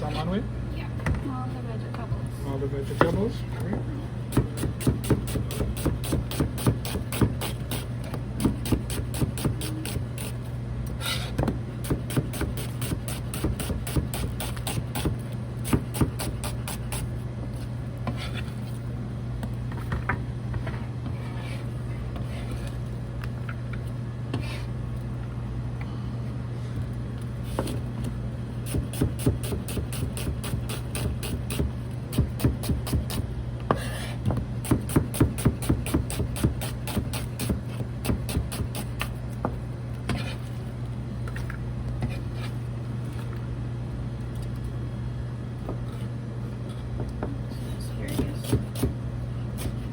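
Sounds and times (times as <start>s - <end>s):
knife chopping on cutting board: 4.3s - 10.4s, 11.0s - 17.1s, 28.7s - 39.1s, 48.1s - 49.0s.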